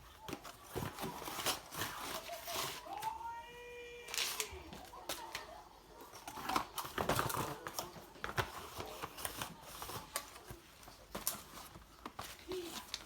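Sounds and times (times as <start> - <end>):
parts and packaging clicking and rustling: 0.0 - 3.3, 4.0 - 13.0.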